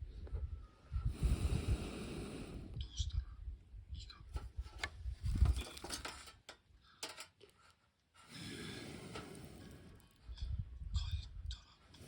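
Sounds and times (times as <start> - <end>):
fire hissing: 8.3 - 10.2.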